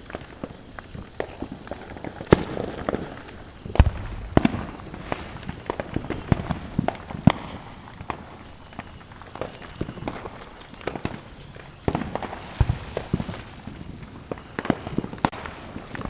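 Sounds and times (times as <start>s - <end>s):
fireworks bangs: 0.0s - 16.0s
fireworks crackling: 0.0s - 16.0s
deep boom: 3.7s - 6.4s.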